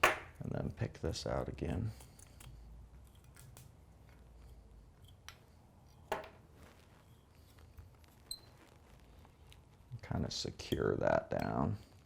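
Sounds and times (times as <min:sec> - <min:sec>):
fly-tying tool scratching and clicking: 0:02.0 - 0:06.0.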